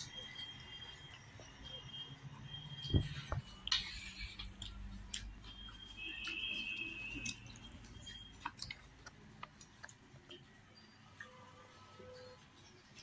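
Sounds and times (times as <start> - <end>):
faint chewing: 3.0 - 13.0.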